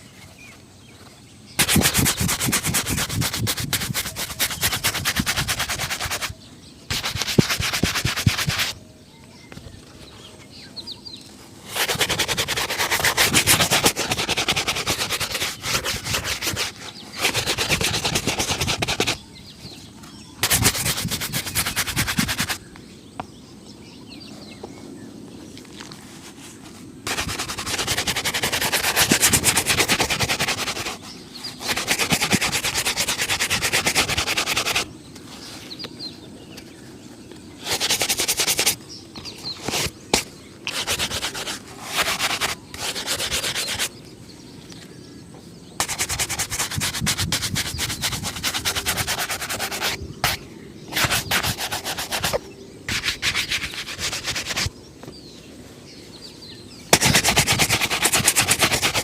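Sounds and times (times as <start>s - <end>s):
brush scrubbing leather shoe: 1.6s - 6.3s, 6.9s - 8.8s, 11.7s - 19.2s, 20.4s - 22.6s, 27.1s - 34.9s, 37.6s - 38.8s, 39.6s - 43.9s, 45.8s - 54.7s, 56.9s - 59.0s.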